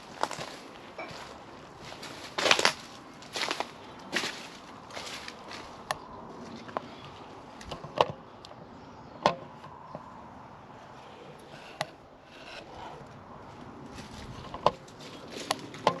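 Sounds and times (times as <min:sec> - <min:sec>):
footsteps through debris: 0:00.0 - 0:06.8, 0:13.8 - 0:15.8
dry wood snapping: 0:02.2 - 0:08.6, 0:13.9 - 0:16.0.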